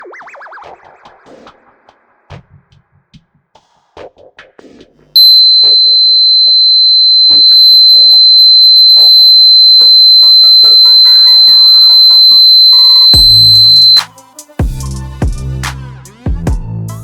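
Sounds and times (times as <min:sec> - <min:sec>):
high-pitched alarm buzzer: 0:05.2 - 0:14.0.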